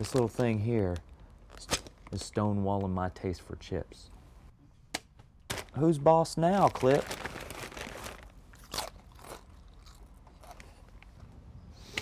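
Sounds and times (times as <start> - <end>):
person crunching chips: 6.5 - 11.0
person chewing: 8.6 - 11.0.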